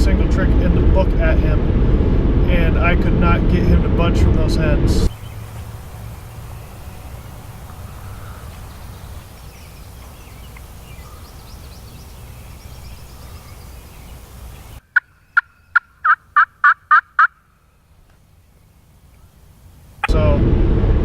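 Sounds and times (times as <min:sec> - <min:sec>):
low rumble: 0:00.0 - 0:09.0, 0:20.1 - 0:21.0
turkey yelps: 0:14.9 - 0:17.5.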